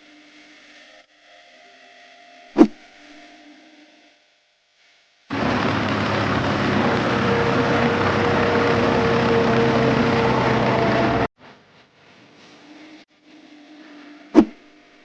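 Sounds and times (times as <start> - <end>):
faint motor hum: 5.3 - 11.3
small motor droning hum: 5.3 - 11.3.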